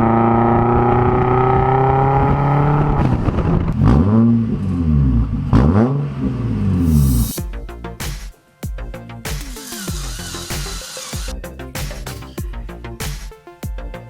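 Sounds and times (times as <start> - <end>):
car engine revving: 0.0 - 7.4
short hiss: 9.3 - 12.4.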